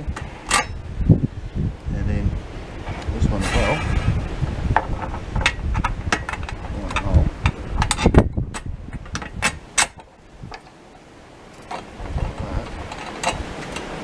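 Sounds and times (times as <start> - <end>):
metal parts clicking and knocking: 4.8 - 10.8, 11.5 - 14.0.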